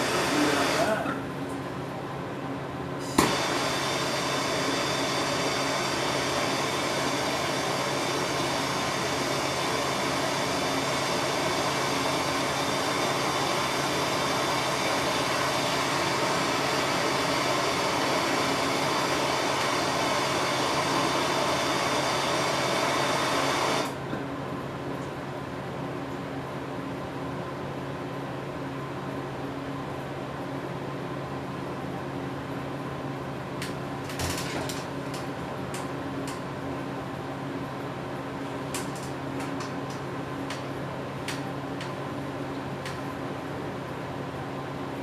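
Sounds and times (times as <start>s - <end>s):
torch flame hissing: 0.0s - 1.1s, 3.0s - 24.0s
torch lighting click: 3.0s - 3.5s.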